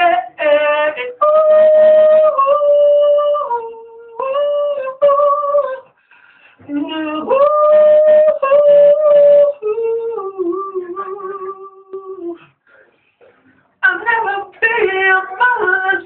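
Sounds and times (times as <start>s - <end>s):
man breathing: 5.9s - 6.6s.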